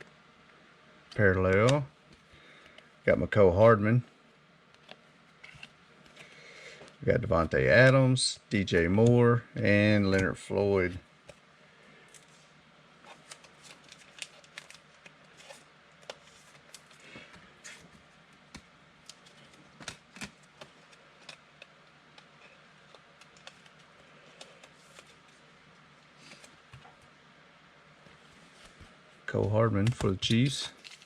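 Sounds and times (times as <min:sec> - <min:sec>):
trading cards being handled: 0:04.8 - 0:07.0, 0:28.4 - 0:31.0.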